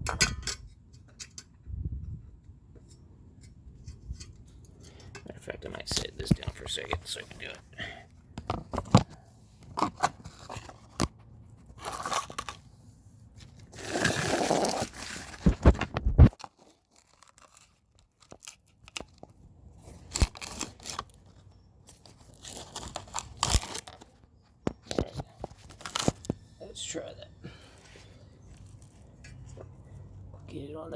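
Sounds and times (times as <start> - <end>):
small parts clicking and knocking: 0.0 - 1.6.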